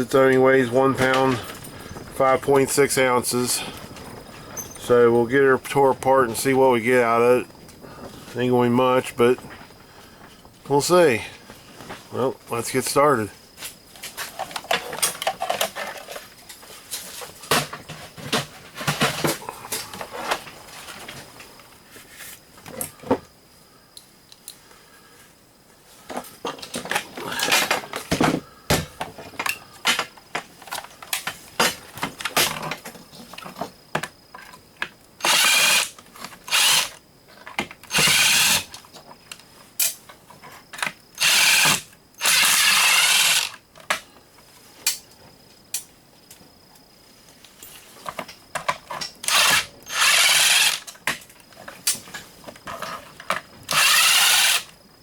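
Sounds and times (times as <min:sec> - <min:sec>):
power drill bursts: 0:35.2 - 0:37.0, 0:37.9 - 0:38.7, 0:41.2 - 0:43.6, 0:49.2 - 0:50.9, 0:53.7 - 0:54.7
plastic parts clicking and knocking: 0:48.0 - 0:54.6.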